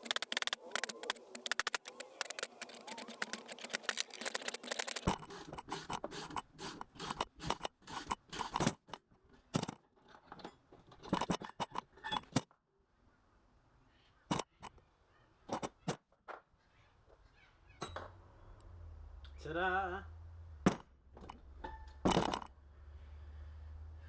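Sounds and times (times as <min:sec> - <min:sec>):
hand tools scraping metal: 0:00.0 - 0:06.0.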